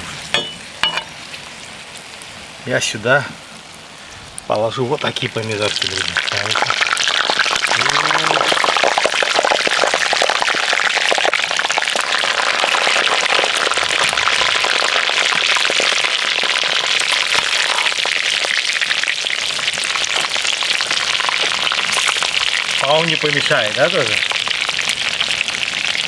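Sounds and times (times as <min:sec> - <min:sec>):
food sizzling in fat: 0:00.0 - 0:26.0.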